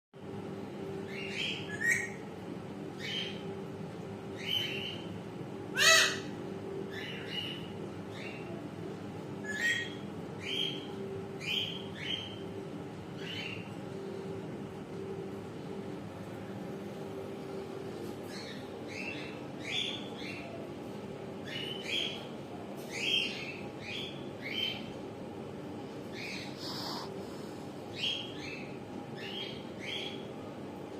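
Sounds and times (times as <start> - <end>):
steady low hum: 0.2 - 30.9
parrot calling: 5.7 - 7.6.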